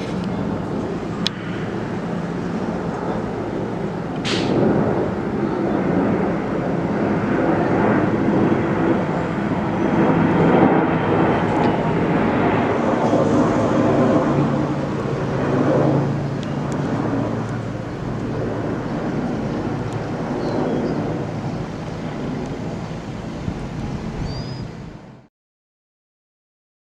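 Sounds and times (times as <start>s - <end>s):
air tanker engine rumble: 0.0s - 25.3s
sharp click: 4.2s - 4.6s.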